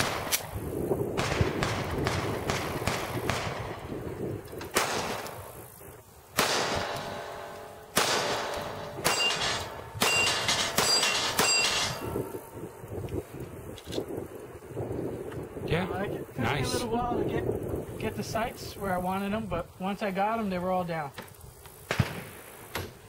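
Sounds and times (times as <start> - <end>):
pistol shots: 1.2 - 3.8, 4.7 - 5.4, 6.4 - 12.1
metallic pings of steel targets: 6.8 - 12.6.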